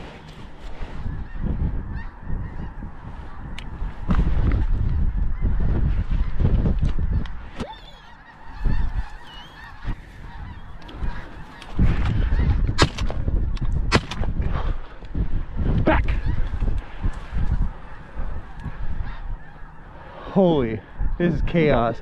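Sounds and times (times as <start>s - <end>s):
snow geese honking: 0.0s - 4.1s, 4.7s - 13.5s, 16.1s - 22.0s
wind rumble on microphone: 0.0s - 7.8s, 8.4s - 22.0s
sharp cracks: 12.8s - 14.3s.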